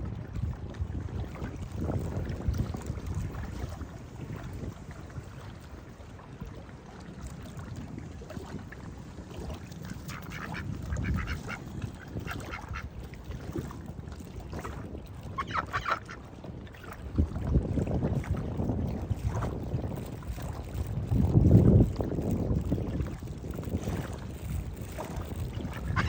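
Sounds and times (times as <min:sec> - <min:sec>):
wind rumbling on microphone: 0:00.0 - 0:26.0
ducks quacking: 0:10.1 - 0:12.9, 0:15.4 - 0:16.2.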